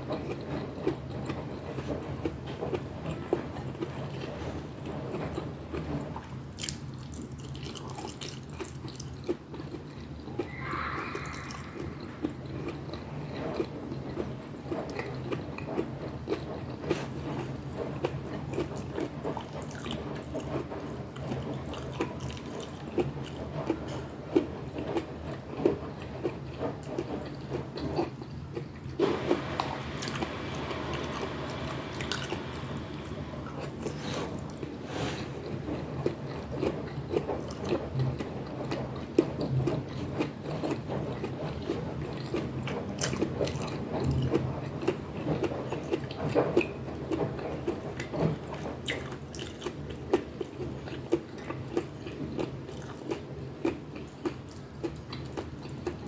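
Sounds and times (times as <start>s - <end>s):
person chewing with wet clicks: 0.0s - 29.4s, 30.0s - 34.8s, 35.4s - 56.0s
low steady hum: 0.0s - 41.2s.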